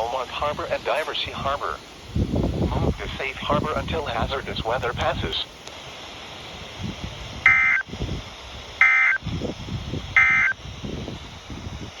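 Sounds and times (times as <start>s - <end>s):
low radio noise rumble: 0.0s - 12.0s
warbling two-tone data squawks: 7.5s - 7.9s, 8.8s - 9.2s, 10.2s - 10.6s.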